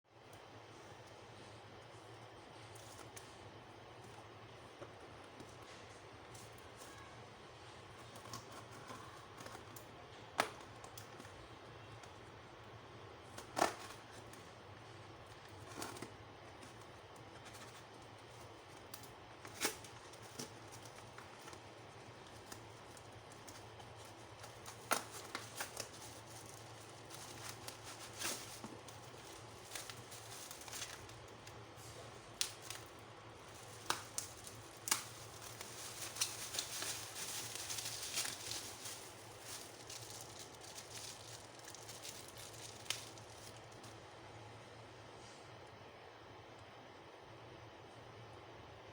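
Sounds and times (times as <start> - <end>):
packaging clicking and rustling: 7.9 - 12.2, 15.3 - 44.0.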